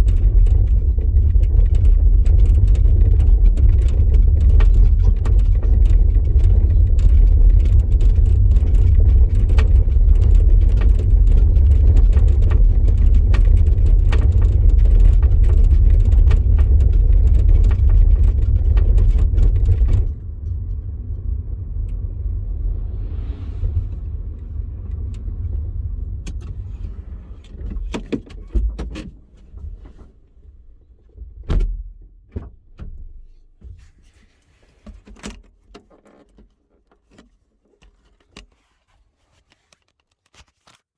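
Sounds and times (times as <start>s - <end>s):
car axle clicks and knocks: 0.0s - 20.9s
road and tyre rumble: 0.0s - 34.3s.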